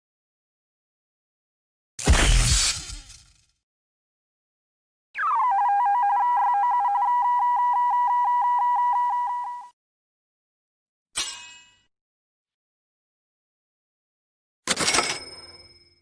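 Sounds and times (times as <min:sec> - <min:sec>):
electronic warbling tone: 0:05.2 - 0:07.1.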